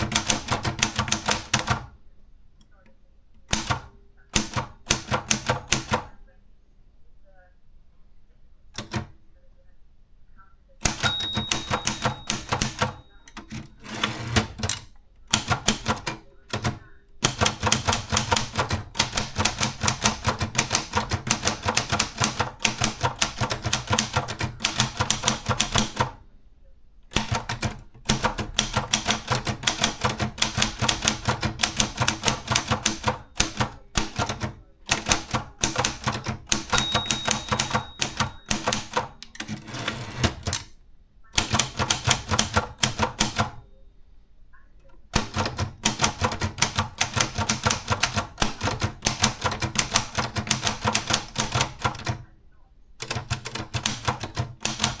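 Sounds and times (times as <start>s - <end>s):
manual typewriter typing: 0.0s - 2.0s, 3.5s - 6.1s, 8.7s - 9.2s, 10.8s - 26.2s, 27.1s - 40.7s, 41.4s - 43.7s, 45.1s - 52.3s, 53.0s - 55.0s
typewriter bell ding: 10.8s - 14.6s, 35.6s - 40.6s.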